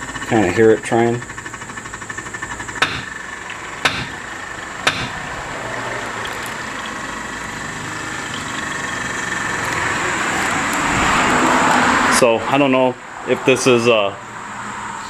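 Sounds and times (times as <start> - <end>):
pump humming and whining: 0.0 - 12.1
sharp hammer taps on metal: 2.8 - 3.2, 3.8 - 4.2, 4.9 - 5.2.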